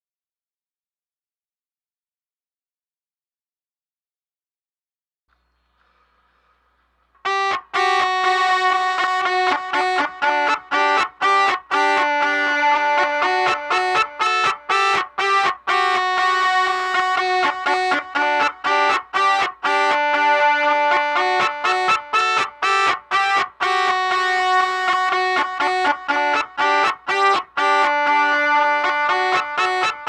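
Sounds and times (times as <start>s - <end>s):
melodica melody with echoes: 7.2s - 30.0s.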